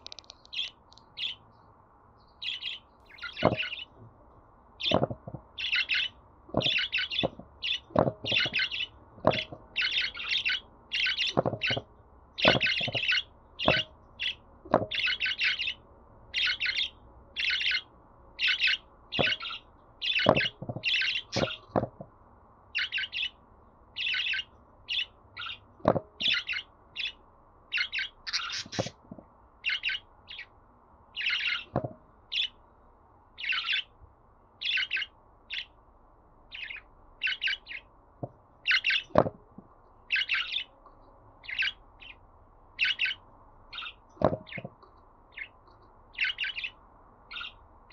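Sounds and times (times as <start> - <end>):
sharp clicks: 0.0 - 1.1
budgerigar chirping: 2.4 - 4.0, 4.8 - 11.8, 12.4 - 21.7, 22.8 - 23.4, 24.0 - 29.0, 29.6 - 30.5, 31.2 - 32.6, 33.4 - 33.9, 34.6 - 35.8, 36.5 - 37.9, 38.6 - 39.2, 40.1 - 40.8, 41.4 - 42.2, 42.8 - 44.7, 45.3 - 47.6.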